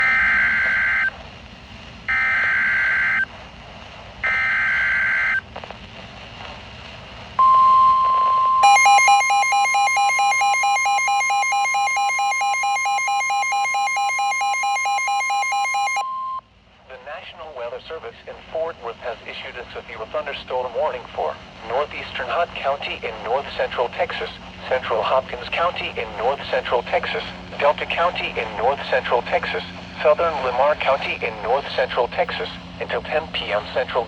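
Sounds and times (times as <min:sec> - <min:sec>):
steady warning alarm tone: 0:07.4 - 0:16.1
fast pulsing electronic alarm: 0:08.6 - 0:16.0.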